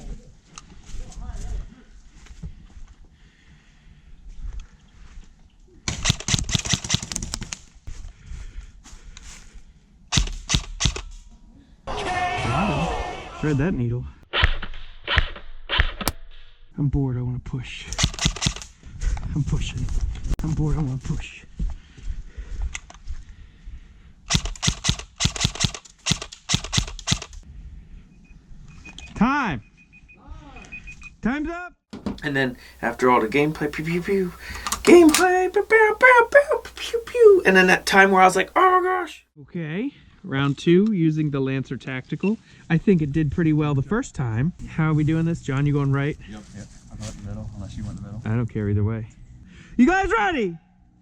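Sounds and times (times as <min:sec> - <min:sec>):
airsoft gun firing: 0:05.9 - 0:07.6, 0:10.1 - 0:11.3, 0:18.0 - 0:18.7, 0:24.3 - 0:27.4.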